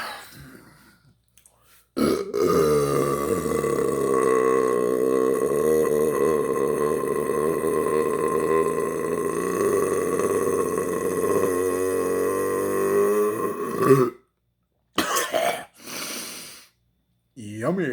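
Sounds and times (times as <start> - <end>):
man belching: 2.0 - 14.2, 15.0 - 15.8.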